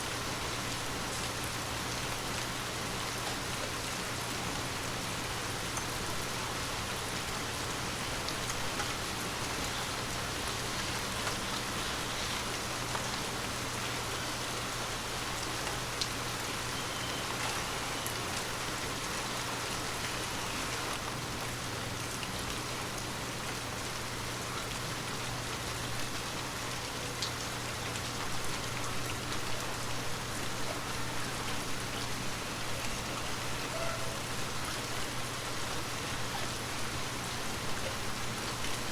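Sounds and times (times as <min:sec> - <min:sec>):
light rain pattering: 0:00.0 - 0:38.9.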